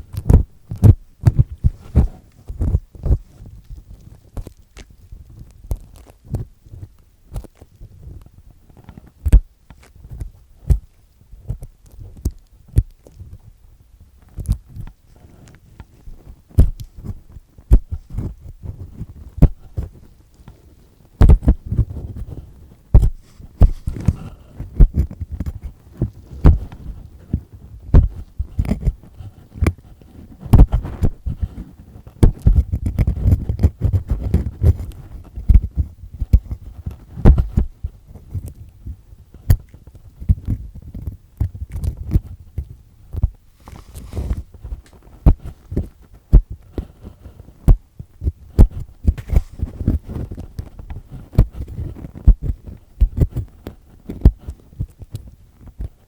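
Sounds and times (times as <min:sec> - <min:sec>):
earpick scraping inside ear: 0:14.3 - 0:20.6, 0:21.2 - 0:38.6, 0:39.4 - 0:56.0.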